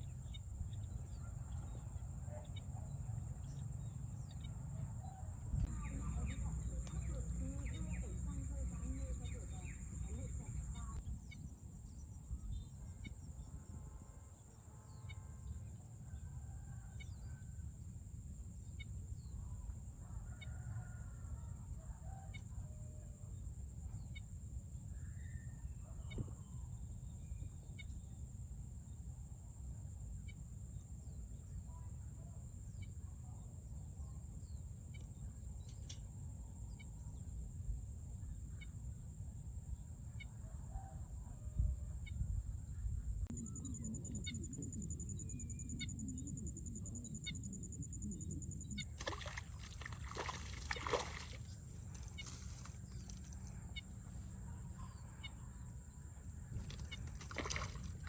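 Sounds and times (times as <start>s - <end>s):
low rumble: 43.0s - 50.3s
high-pitched insect drone: 43.3s - 54.4s.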